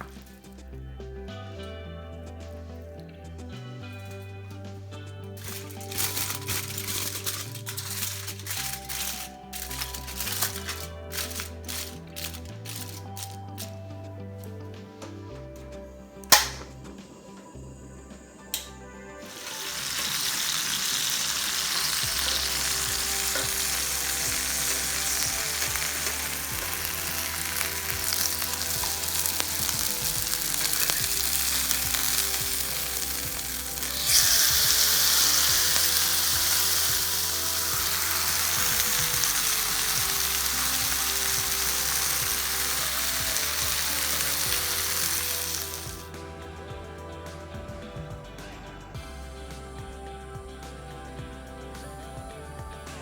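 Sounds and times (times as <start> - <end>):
chicken sizzling in a frying pan: 5.4 - 11.9, 19.2 - 46.1.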